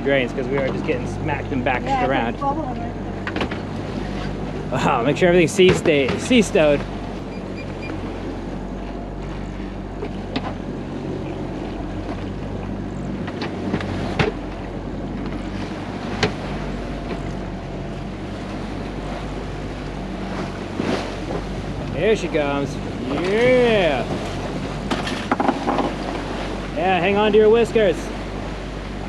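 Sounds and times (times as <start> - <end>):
boat engine running: 0.0 - 29.0
water sloshing around hull: 0.0 - 29.0.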